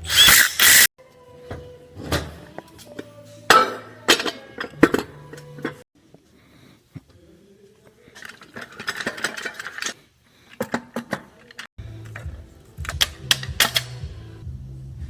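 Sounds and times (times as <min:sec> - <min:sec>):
metal parts clicking: 0:08.2 - 0:12.2
background music with bass: 0:11.8 - 0:15.0.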